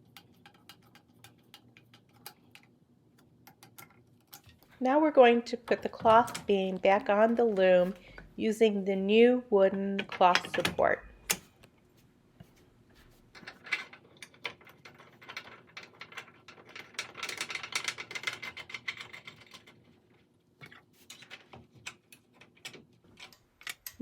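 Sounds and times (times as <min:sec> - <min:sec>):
clicks and knocks of wood and metal: 0:05.7 - 0:08.3, 0:13.2 - 0:24.0.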